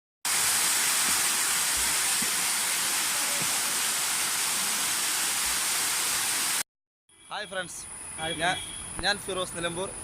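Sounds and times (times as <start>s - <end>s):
waterfall rushing: 0.3s - 6.6s.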